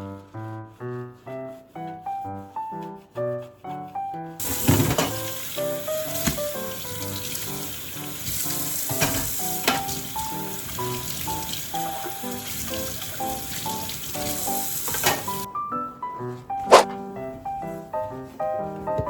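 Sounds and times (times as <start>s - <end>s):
food sizzling in a frying pan: 4.4s - 15.5s
utensil tapping a pan: 8.2s - 15.5s.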